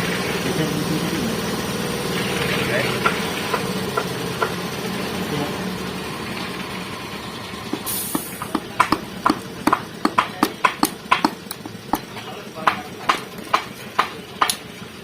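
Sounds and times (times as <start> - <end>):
engine hum: 0.0 - 15.0
hand tool clicks: 7.7 - 12.1, 14.4 - 14.6.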